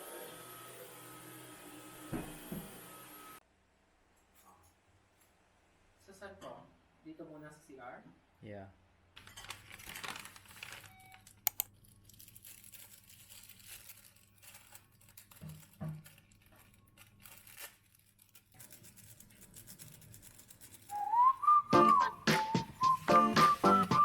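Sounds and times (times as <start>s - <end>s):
faint rustling and crinkling: 9.2s - 21.2s
sharp clicks: 11.4s - 11.7s.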